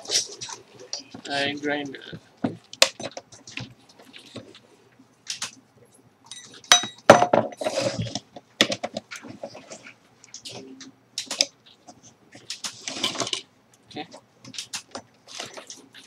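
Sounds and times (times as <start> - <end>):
tools clinking and knocking: 6.3 - 7.6.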